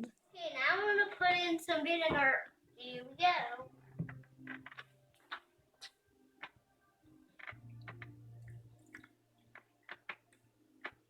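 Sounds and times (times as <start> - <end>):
faint clicks and glugging ticks: 7.3 - 11.0.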